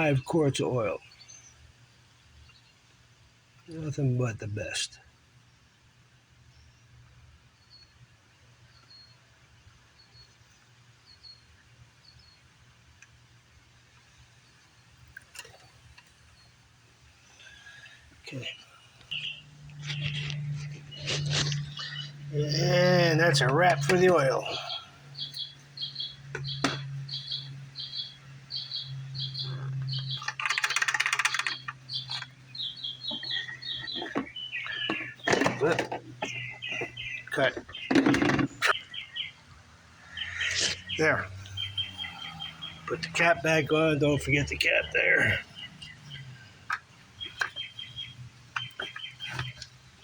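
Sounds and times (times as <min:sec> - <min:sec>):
small bird chirping: 0:08.6 - 0:09.3, 0:17.2 - 0:50.0
rapid clicking rattle: 0:30.0 - 0:32.3.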